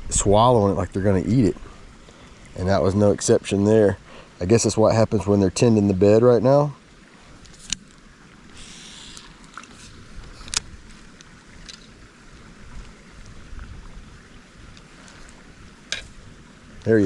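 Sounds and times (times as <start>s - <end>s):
wind rumble on microphone: 0.0s - 3.9s, 9.8s - 17.0s.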